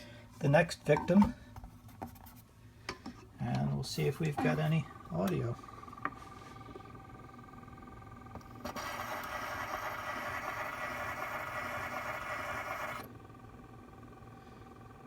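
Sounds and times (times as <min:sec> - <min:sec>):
scratchy record surface noise: 0:08.6 - 0:13.0.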